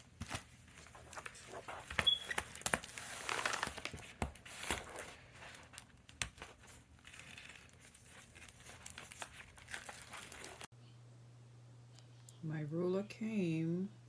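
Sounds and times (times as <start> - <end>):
packaging crinkling and rustling: 0.0 - 10.7.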